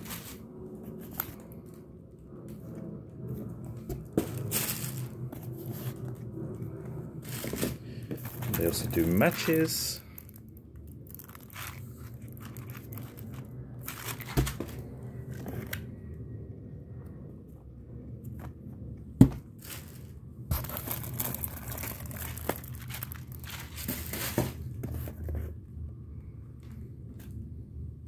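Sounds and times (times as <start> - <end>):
packaging rustling and crinkling: 0.0 - 1.8, 3.8 - 6.4, 7.2 - 15.9, 19.2 - 25.5.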